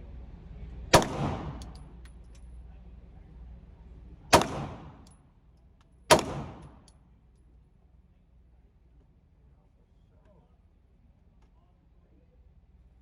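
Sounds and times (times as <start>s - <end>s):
gunshots echoing indoors: 0.9s - 1.8s, 4.3s - 5.1s, 6.1s - 6.9s.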